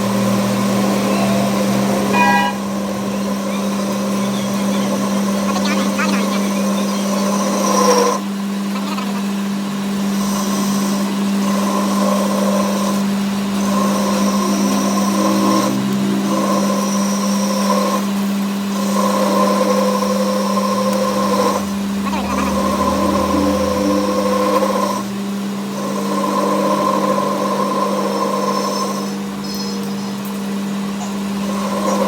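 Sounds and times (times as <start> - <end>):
high-pitched whine: 0.0 - 11.0, 12.2 - 18.5, 19.9 - 27.5
machine motor humming: 0.0 - 32.0.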